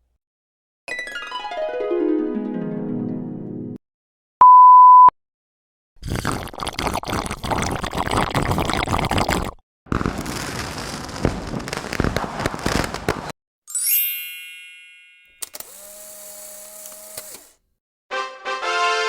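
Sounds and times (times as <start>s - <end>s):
high censor bleep: 4.4s - 5.1s
dense crackling noise: 9.9s - 13.3s.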